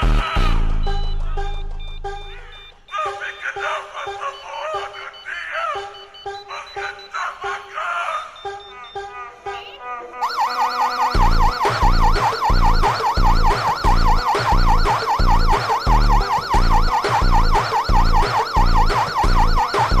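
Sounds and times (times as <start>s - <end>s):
siren-like alarm tone: 8.1s - 20.0s.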